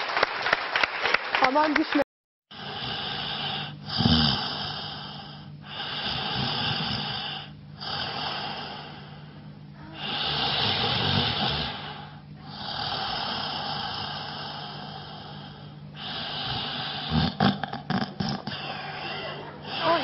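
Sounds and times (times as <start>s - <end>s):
man snoring: 2.5s - 20.0s
low snort: 2.6s - 9.0s, 10.0s - 18.6s.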